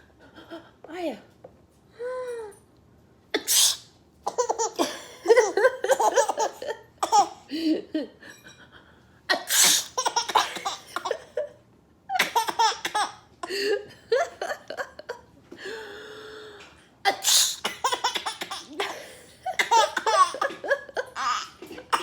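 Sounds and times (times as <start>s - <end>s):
woman pretend sneezing: 3.4s - 3.9s, 9.3s - 10.0s, 17.1s - 17.6s
baby laughing: 4.3s - 7.4s, 9.9s - 11.4s, 12.2s - 13.2s, 19.5s - 22.0s.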